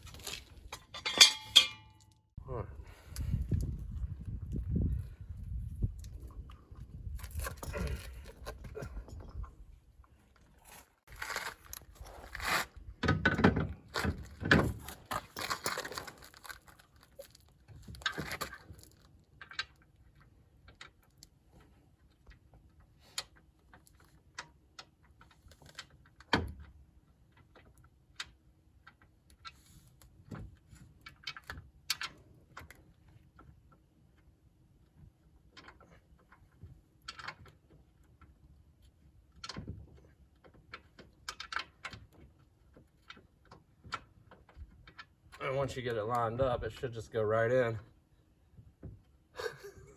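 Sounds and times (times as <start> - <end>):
metal parts clinking and scraping: 0.0 - 2.2.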